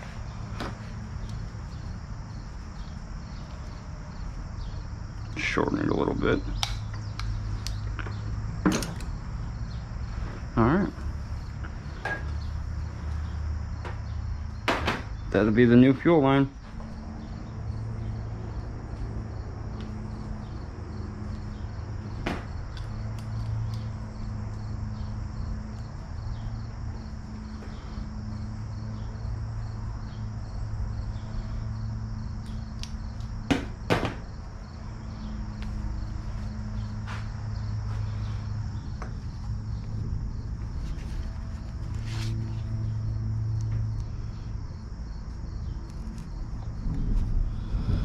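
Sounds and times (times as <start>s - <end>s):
steady low hum: 0.0s - 48.0s
tools and hose fittings clinking: 8.0s - 9.2s.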